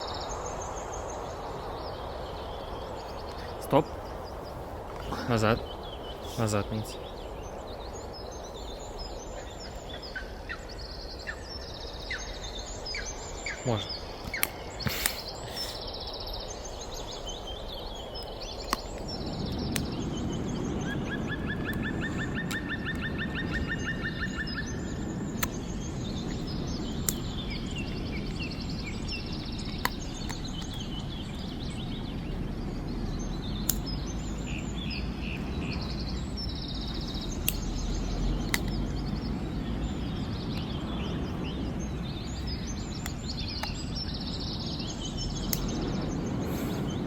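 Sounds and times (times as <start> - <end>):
low rushing noise: 0.0 - 47.0
small birds chirping and trilling: 0.0 - 47.0
sharp clicks: 14.2 - 15.8, 18.2 - 20.0, 21.6 - 23.6, 25.3 - 27.4, 29.1 - 31.1, 33.6 - 34.2, 36.4 - 39.3, 45.2 - 45.9.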